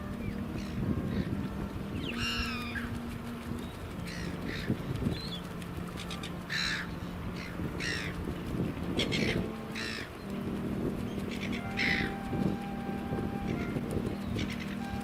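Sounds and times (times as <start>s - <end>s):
gulls squawking: 0.0s - 15.0s
steady low hum: 0.0s - 15.0s.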